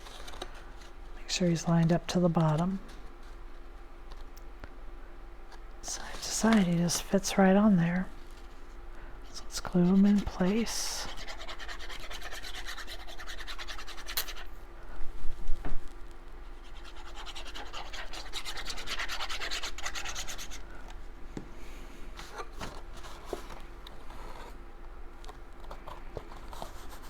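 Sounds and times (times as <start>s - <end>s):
cardstock scratching on paper: 9.8s - 14.5s, 16.6s - 20.6s.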